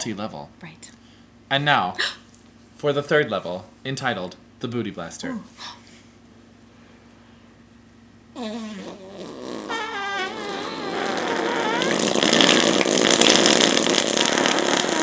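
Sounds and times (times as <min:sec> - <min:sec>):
fake fart blown on skin: 0:08.3 - 0:15.0.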